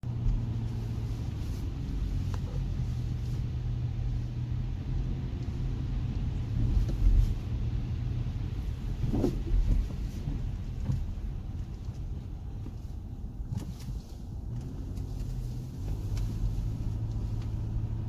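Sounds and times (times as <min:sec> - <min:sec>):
vehicle engine rumbling: 0:00.0 - 0:18.0.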